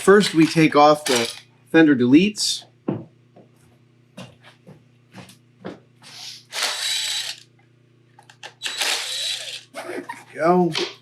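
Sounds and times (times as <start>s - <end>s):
power driver whirring: 0.0s - 1.5s, 6.4s - 7.5s, 8.3s - 9.8s
tools clicking: 0.2s - 1.4s.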